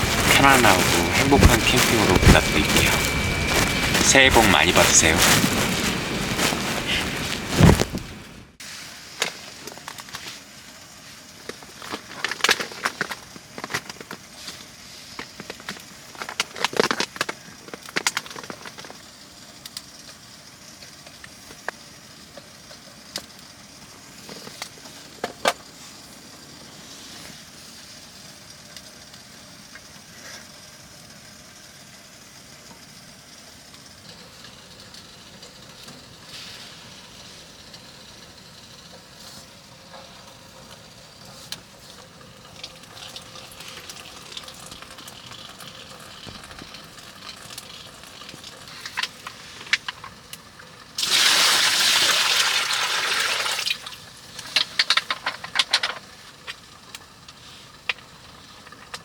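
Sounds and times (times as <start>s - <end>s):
sharp crackles and clicks: 0.0s - 8.6s, 42.3s - 51.2s, 54.4s - 59.0s
cooking sizzling hiss: 0.0s - 13.0s, 33.7s - 59.0s.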